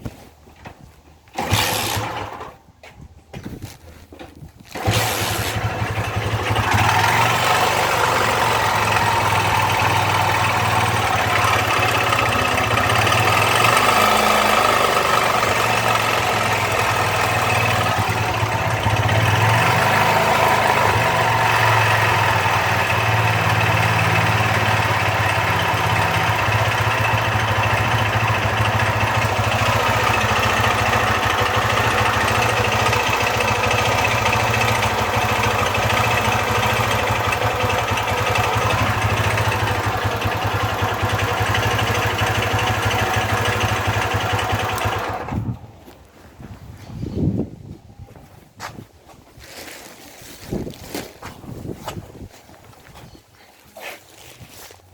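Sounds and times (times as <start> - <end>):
strange engine noise: 1.3 - 2.7, 4.6 - 47.1
motorcycle engine idling: 4.8 - 45.8.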